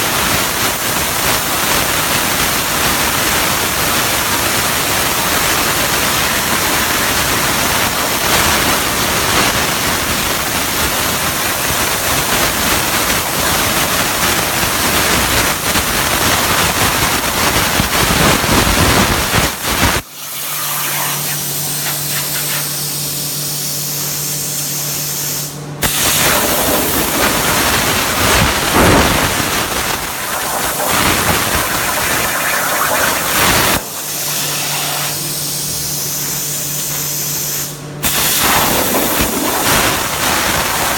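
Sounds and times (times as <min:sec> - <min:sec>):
plasma torch hissing: 0:24.6 - 0:40.9
steady low hum: 0:25.6 - 0:40.9.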